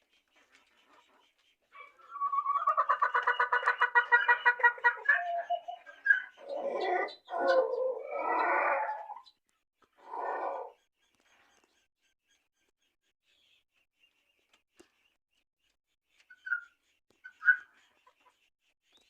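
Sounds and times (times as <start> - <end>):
chickens squawking: 1.7 - 9.3, 9.9 - 10.8.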